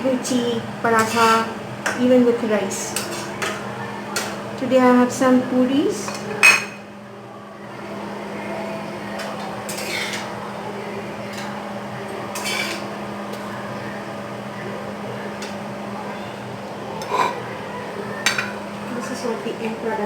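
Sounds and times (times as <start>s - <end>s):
utensil clinking dishes: 2.9s - 4.4s, 6.0s - 6.9s, 9.2s - 10.4s, 11.3s - 11.6s, 12.3s - 13.5s, 17.0s - 17.5s, 18.2s - 18.6s.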